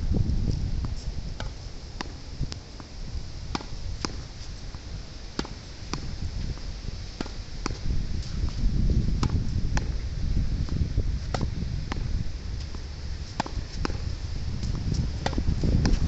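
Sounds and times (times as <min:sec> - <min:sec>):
wind buffeting microphone: 0:00.0 - 0:16.0
tennis ball hitting wall: 0:03.5 - 0:04.2, 0:05.4 - 0:06.1, 0:09.2 - 0:10.0, 0:10.6 - 0:16.0.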